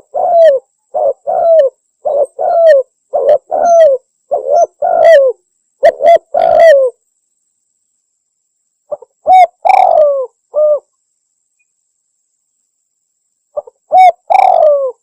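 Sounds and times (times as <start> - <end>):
dove cooing: 0.0 - 7.0, 8.9 - 10.9, 13.6 - 15.0.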